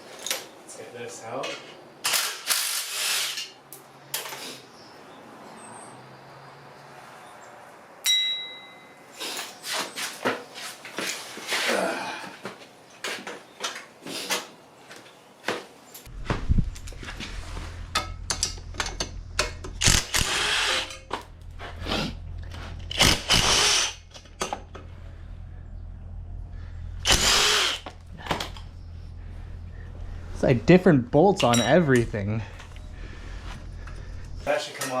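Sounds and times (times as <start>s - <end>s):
steady low hum: 16.1s - 34.5s
metal tool clicks and knocks: 17.9s - 20.0s
small power tool whirring: 19.8s - 21.0s, 22.8s - 24.2s, 27.0s - 28.6s.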